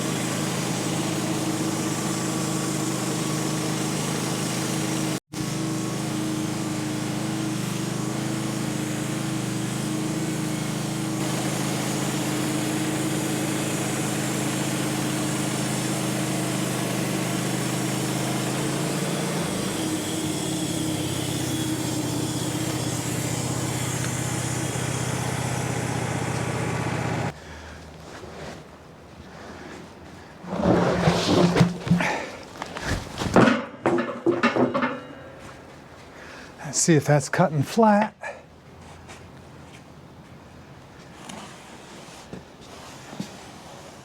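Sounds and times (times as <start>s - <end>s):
sawmill engine running: 0.0s - 27.4s.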